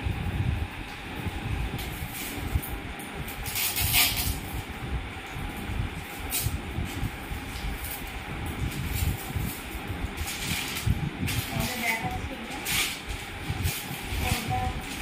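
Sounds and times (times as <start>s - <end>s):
rustling bursts: 6.2s - 15.0s.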